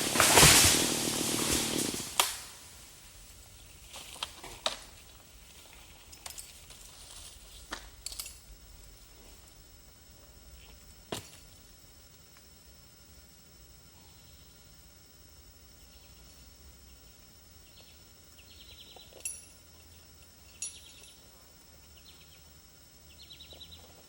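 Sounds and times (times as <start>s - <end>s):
chainsaw winding down: 0.0s - 2.4s
insect calls: 0.0s - 24.0s.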